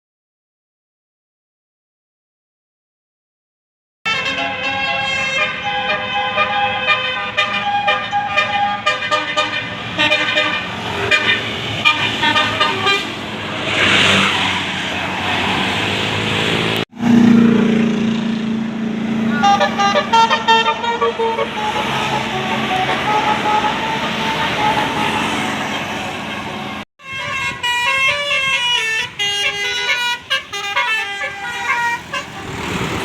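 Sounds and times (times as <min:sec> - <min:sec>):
loud low horn note: 0:04.1 - 0:13.2
multi-tone air horn tune: 0:04.1 - 0:13.2, 0:19.3 - 0:25.5, 0:27.0 - 0:33.0.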